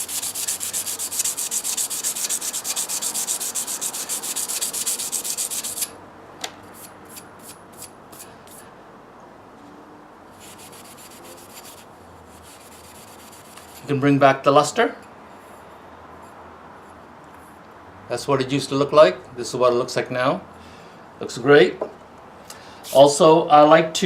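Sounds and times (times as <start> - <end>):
emery cloth scrubbing copper pipe: 0.0 - 5.9.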